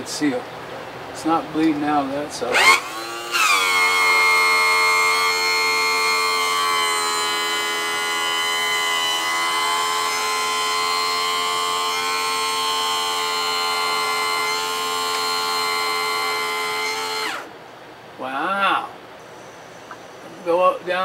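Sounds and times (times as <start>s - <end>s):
electric pump motor whining: 2.5s - 17.5s.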